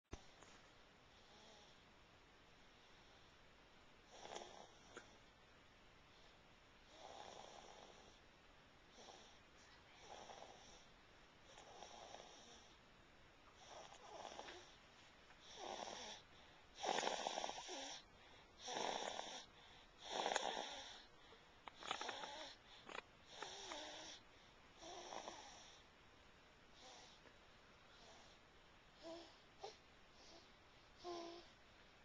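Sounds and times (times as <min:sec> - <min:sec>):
snoring: 0:01.2 - 0:01.8, 0:04.1 - 0:05.2, 0:06.9 - 0:08.2, 0:08.9 - 0:09.4, 0:10.0 - 0:10.9, 0:11.5 - 0:12.8, 0:13.6 - 0:14.8, 0:15.4 - 0:21.1, 0:21.7 - 0:24.2, 0:24.8 - 0:25.8, 0:26.8 - 0:27.2, 0:28.0 - 0:28.4, 0:29.0 - 0:31.5.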